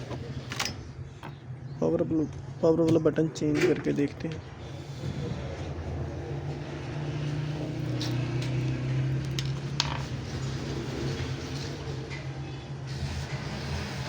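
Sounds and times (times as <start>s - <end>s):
low engine hum: 4.4s - 14.0s.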